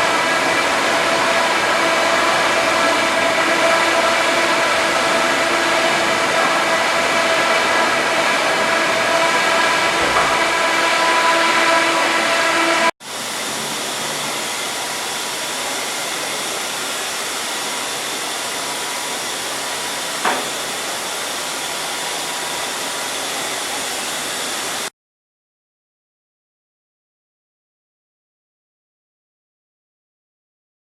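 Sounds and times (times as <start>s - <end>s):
cnc machine hissing: 0.1s - 24.9s
faint machine whine: 0.2s - 24.9s.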